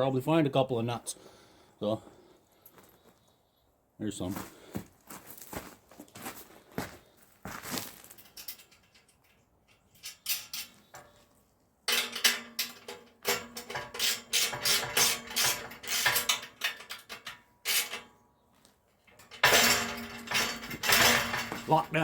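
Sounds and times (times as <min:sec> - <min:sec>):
hand ratchet clicking: 0:12.0 - 0:18.0.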